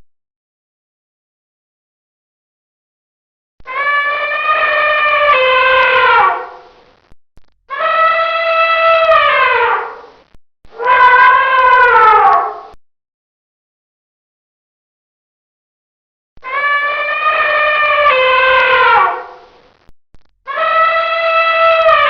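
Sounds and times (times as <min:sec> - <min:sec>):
elephant trumpeting: 0:03.7 - 0:06.6, 0:07.7 - 0:10.1, 0:10.7 - 0:12.8, 0:16.4 - 0:19.4, 0:20.5 - 0:22.0.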